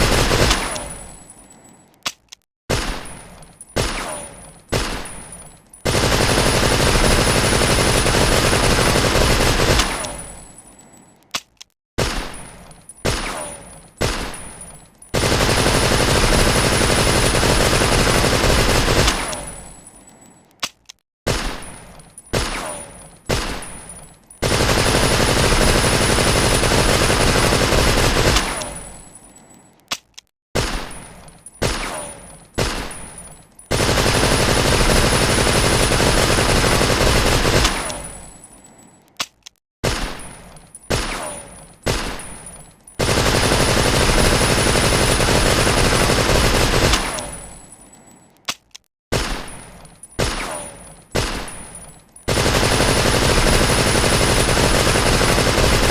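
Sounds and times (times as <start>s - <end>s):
submachine gun automatic fire: 0.0s - 1.0s, 5.8s - 10.3s, 15.2s - 19.6s, 24.4s - 28.9s, 33.7s - 38.2s, 43.0s - 47.5s, 52.3s - 55.9s.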